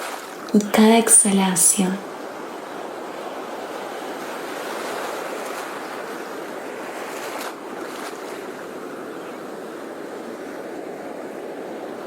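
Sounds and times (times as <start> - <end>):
sea waves washing on shore: 3.0 - 12.0.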